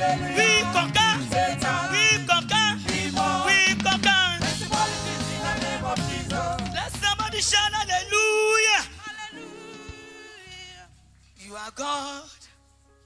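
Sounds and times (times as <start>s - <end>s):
gospel singing with live band: 0.0s - 12.5s.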